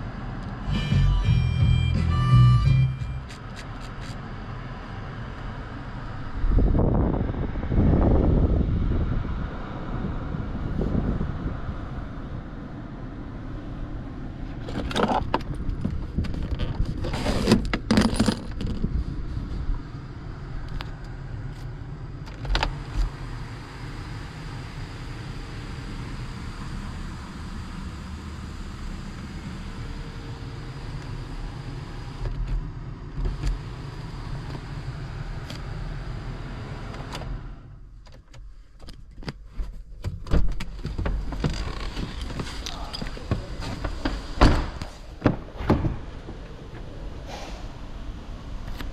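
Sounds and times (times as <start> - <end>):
steady low rumble: 0.0 - 14.7, 18.6 - 40.0, 40.6 - 48.9.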